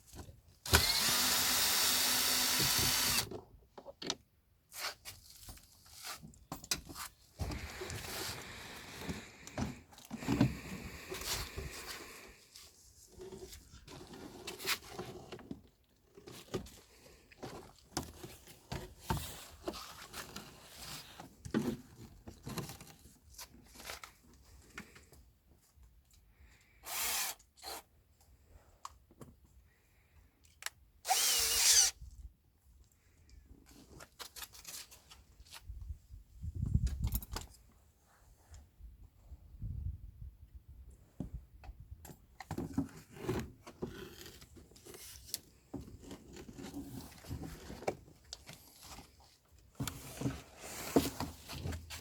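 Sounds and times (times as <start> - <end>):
cordless drill running: 0.7 - 3.3, 26.8 - 27.8, 31.0 - 32.0.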